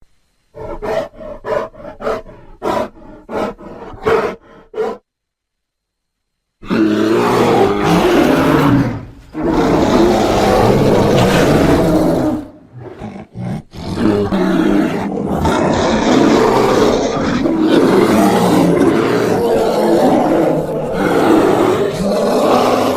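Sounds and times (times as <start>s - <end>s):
loud rough roars: 6.8s - 12.5s.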